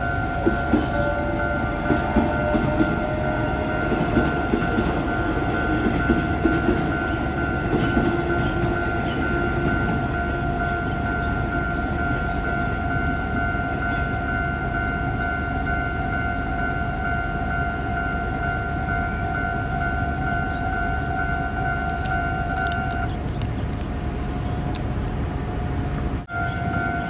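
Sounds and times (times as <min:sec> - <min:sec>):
train wheels clacking over rail joints: 0:00.0 - 0:10.0
steady high tone: 0:26.3 - 0:27.0.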